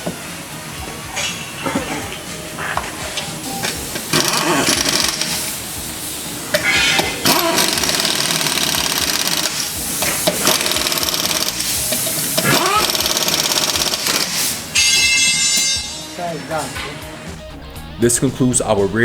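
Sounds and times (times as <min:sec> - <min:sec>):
impact wrench hammering: 0:03.6 - 0:05.8, 0:06.5 - 0:16.0.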